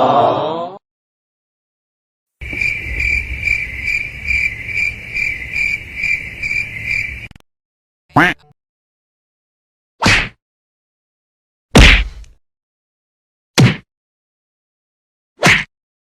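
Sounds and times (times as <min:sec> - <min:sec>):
low rumble: 0:02.4 - 0:06.4
crickets chirping: 0:02.4 - 0:07.4.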